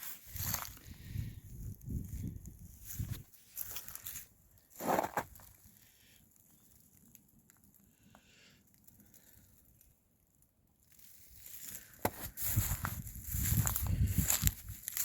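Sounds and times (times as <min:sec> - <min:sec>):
footsteps crunching through dry grass: 0:00.0 - 0:05.8, 0:10.9 - 0:15.0.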